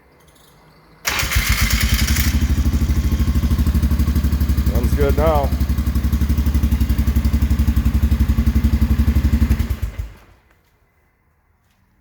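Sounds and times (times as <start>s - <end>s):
atv engine idling: 1.0s - 10.4s.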